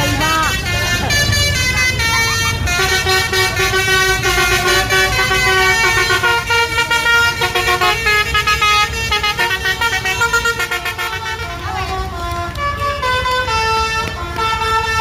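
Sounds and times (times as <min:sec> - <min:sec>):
bus musical horn playing a tune: 0:00.0 - 0:15.0.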